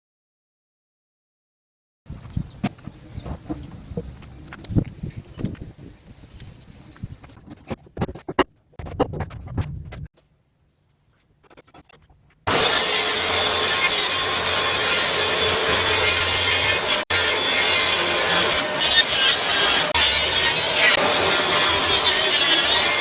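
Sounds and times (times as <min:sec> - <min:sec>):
power tool cutting wood: 0:12.5 - 0:23.0.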